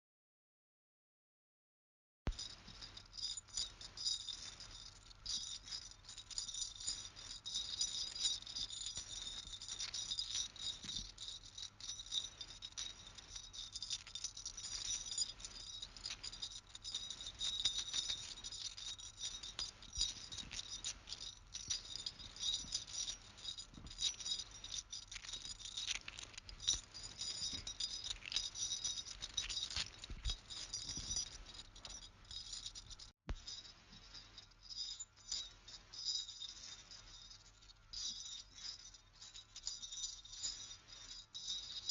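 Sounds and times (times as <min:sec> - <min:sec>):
rattling of small hard objects: 0:07.1 - 0:33.5.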